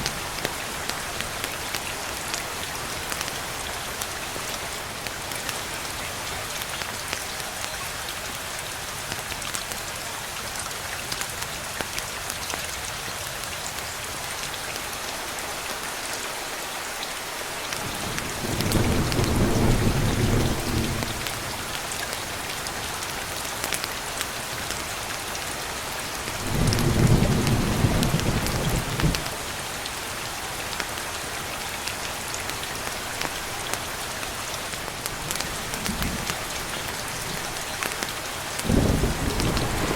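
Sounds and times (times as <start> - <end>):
rain pattering: 0.0 - 39.9
low thunder rumbles: 17.9 - 21.6, 26.4 - 29.3, 38.6 - 39.9.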